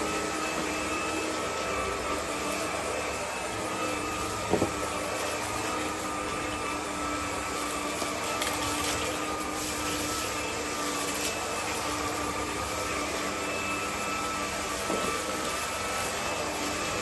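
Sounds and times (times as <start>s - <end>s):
vacuum cleaner motor whine: 0.0s - 17.0s.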